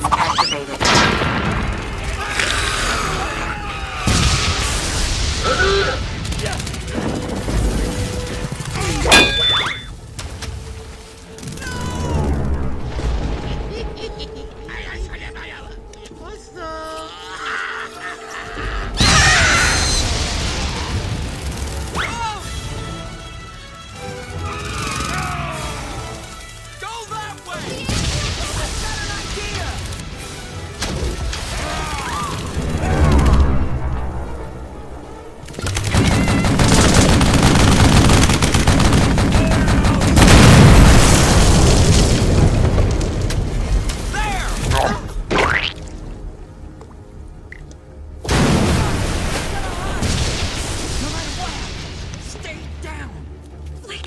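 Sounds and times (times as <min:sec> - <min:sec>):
brief rising and falling squeal: 0:00.0 - 0:00.7
battle background score: 0:00.0 - 0:13.9, 0:19.0 - 0:45.3, 0:48.2 - 0:53.8
loud ringing crash: 0:09.1 - 0:09.9
rapid booming impacts: 0:35.6 - 0:43.3.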